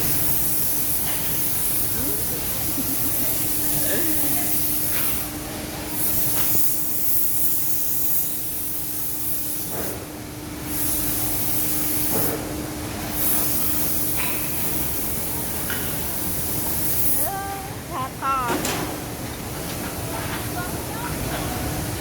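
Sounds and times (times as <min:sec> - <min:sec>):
chainsaw running: 0:01.8 - 0:04.6.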